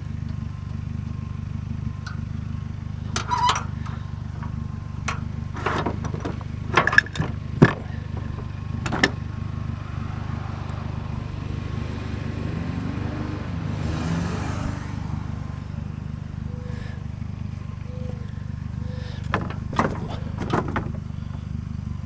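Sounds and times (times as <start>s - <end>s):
car engine rumbling: 0.0s - 22.0s
sharp knocks and clatters: 4.4s - 9.2s, 19.3s - 21.5s.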